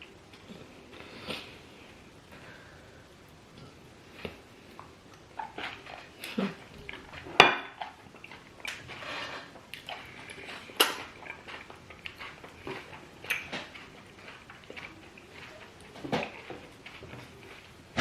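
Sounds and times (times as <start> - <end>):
dishes and cutlery clinking: 6.8 - 18.0.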